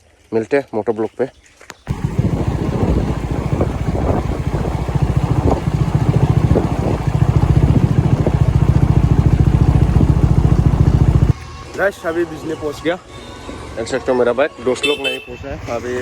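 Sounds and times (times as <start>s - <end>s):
motorcycle engine pulsing: 1.8s - 11.4s.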